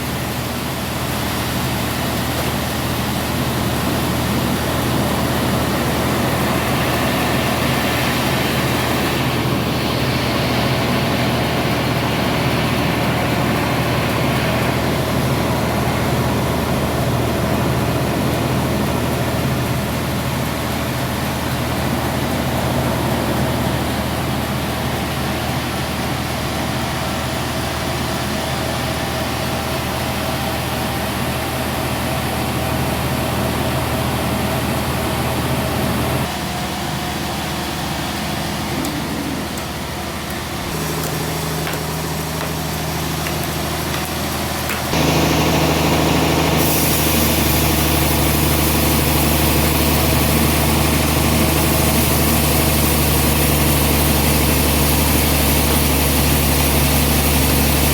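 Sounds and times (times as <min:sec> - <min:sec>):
sawmill machinery engine drone: 0:00.0 - 0:57.9
high hiss: 0:38.6 - 0:57.9.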